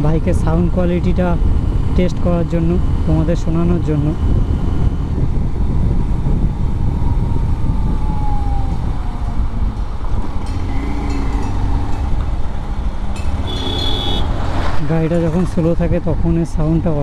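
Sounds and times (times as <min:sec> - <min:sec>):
wind buffeting microphone: 0:00.2 - 0:13.5.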